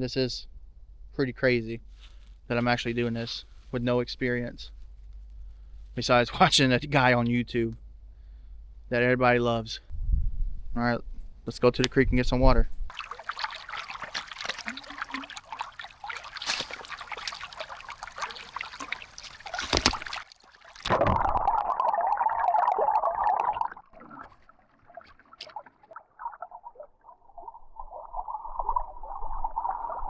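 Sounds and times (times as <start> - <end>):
container filling with water: 12.9 - 30.0
creek water trickling: 12.9 - 30.0.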